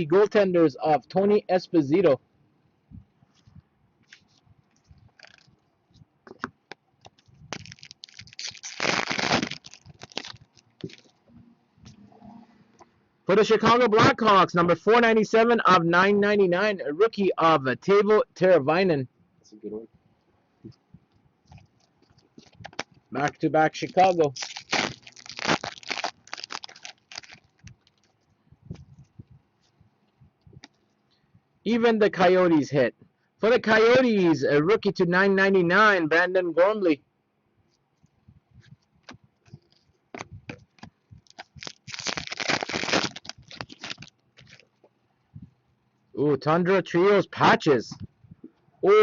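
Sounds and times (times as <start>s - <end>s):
packaging rustling and scraping: 3.3s - 5.6s, 7.1s - 11.2s, 23.8s - 29.8s, 39.0s - 44.8s.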